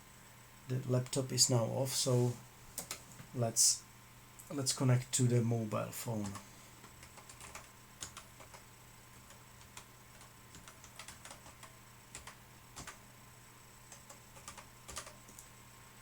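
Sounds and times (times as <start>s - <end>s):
low electrical hum: 0.0s - 16.0s
keyboard keys clicking: 6.2s - 8.6s, 9.3s - 13.0s, 13.9s - 15.5s.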